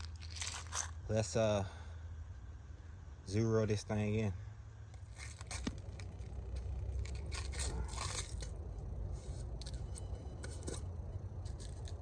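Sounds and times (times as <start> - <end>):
steady low rumble: 4.7 - 12.0
air rifle scrapes and clicks: 5.0 - 12.0.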